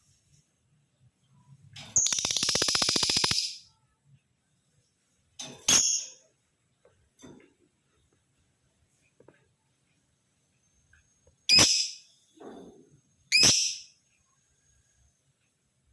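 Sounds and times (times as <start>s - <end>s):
lovebird chattering trill: 2.0s - 3.6s.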